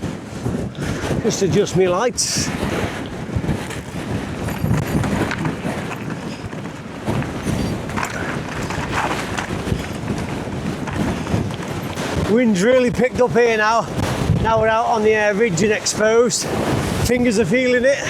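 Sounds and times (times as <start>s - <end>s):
wind buffeting microphone: 0.0s - 18.0s
knocks and rattles: 3.4s - 12.4s.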